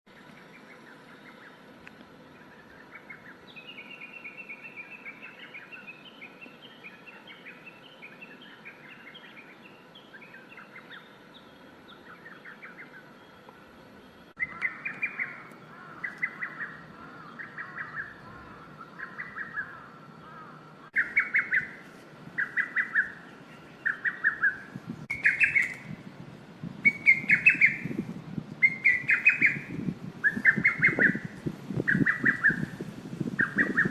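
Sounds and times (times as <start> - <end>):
cuckoo calling: 0.2 - 26.1, 26.7 - 33.9.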